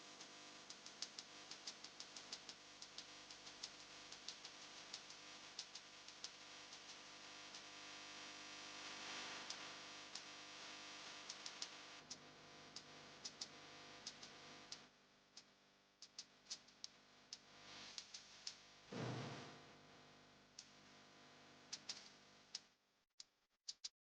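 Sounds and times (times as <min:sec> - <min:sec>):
sharp ticks: 0:21.7 - 0:22.6.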